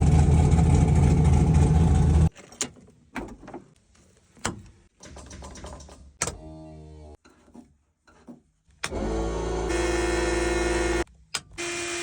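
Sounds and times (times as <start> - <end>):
race car engine running: 0.0 - 2.3.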